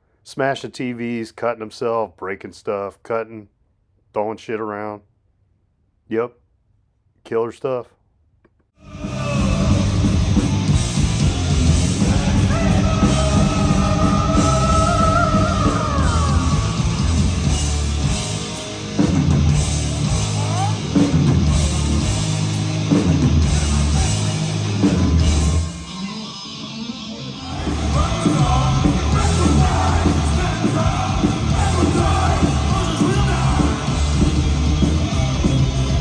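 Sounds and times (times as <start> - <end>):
heavy metal band playing live: 8.8 - 36.0.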